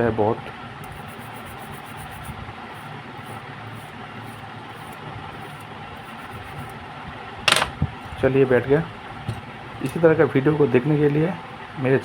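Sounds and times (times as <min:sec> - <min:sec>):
steady low hum: 0:00.0 - 0:12.0
brush scrubbing strokes: 0:00.8 - 0:06.8.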